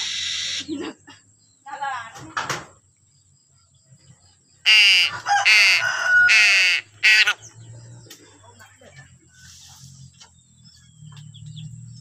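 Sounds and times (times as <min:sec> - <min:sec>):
bird cawing harshly: 0:04.7 - 0:07.4.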